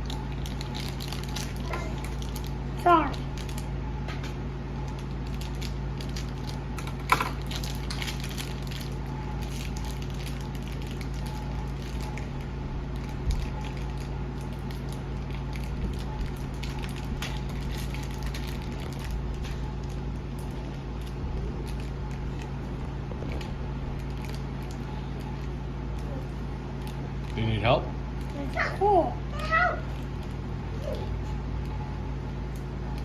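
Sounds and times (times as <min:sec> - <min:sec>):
plastic packaging crinkling: 0:00.0 - 0:03.8, 0:04.4 - 0:28.7
steady low hum: 0:00.0 - 0:33.0.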